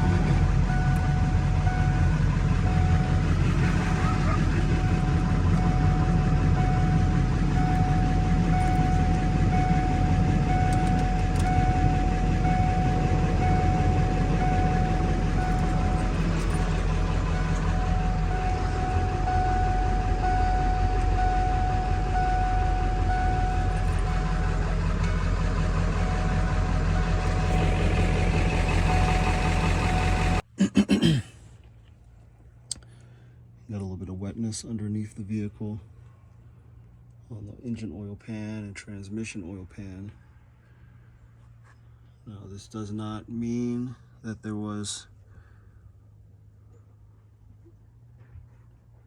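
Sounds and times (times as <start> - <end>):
high-pitched whine: 0.0 - 30.4
engine idling rumble: 0.0 - 49.0.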